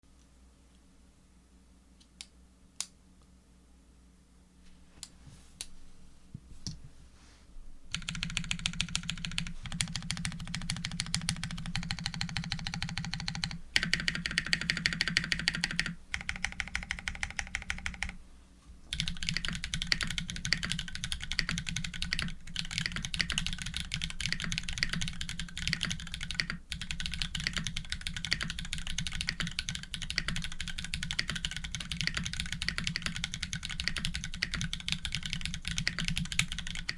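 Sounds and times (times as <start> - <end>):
mechanical keyboard typing: 7.9 - 18.2, 18.9 - 36.9.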